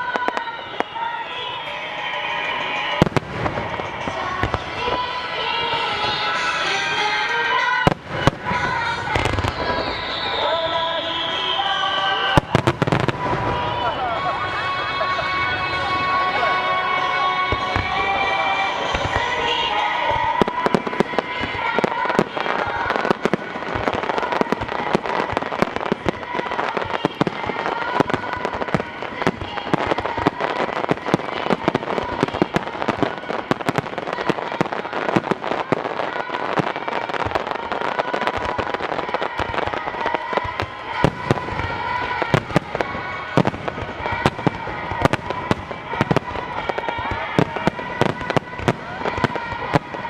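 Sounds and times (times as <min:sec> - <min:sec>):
steady wavering tone: 0:00.0 - 0:07.8
rapid fireworks bangs: 0:00.0 - 0:50.0.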